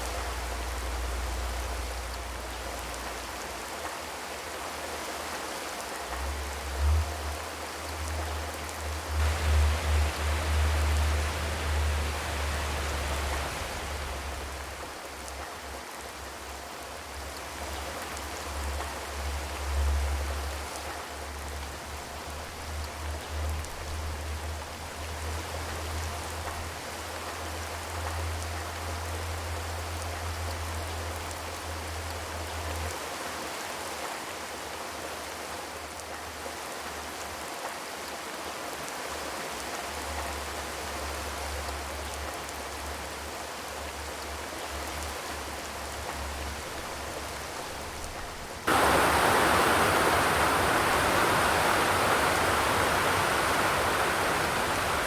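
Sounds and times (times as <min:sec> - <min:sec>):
rain on a metal roof: 0:00.0 - 0:55.0.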